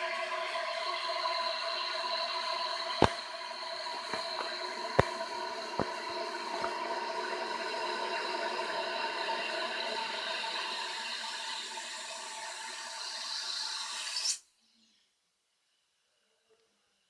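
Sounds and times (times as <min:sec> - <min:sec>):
toilet fill valve hissing: 0:00.0 - 0:14.4
valve squeal closing: 0:12.9 - 0:14.4.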